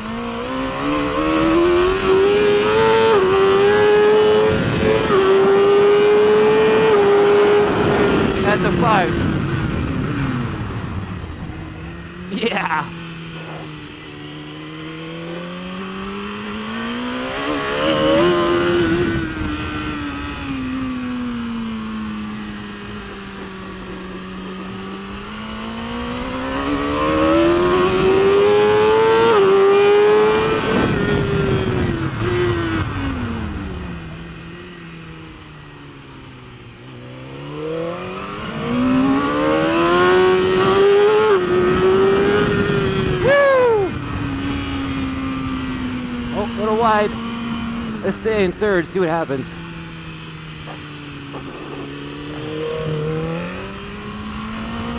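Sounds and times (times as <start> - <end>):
motorcycle engine revving: 0.0 - 54.9
wind rushing: 50.1 - 54.9.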